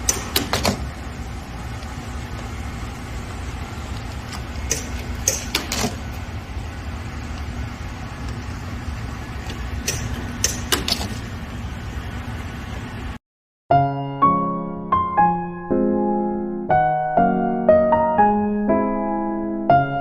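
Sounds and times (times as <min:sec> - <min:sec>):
packaging machine humming: 0:00.0 - 0:13.2
piano music: 0:13.7 - 0:20.0.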